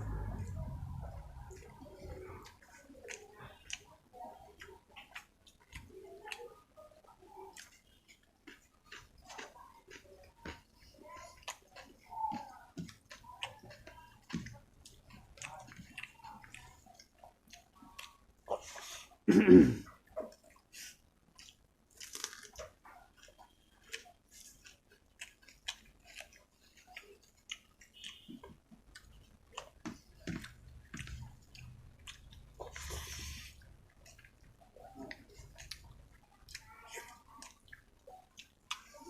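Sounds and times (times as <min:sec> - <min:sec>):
wet chewing mouth clicks: 0:00.4 - 0:06.6, 0:07.3 - 0:18.9, 0:21.3 - 0:39.0.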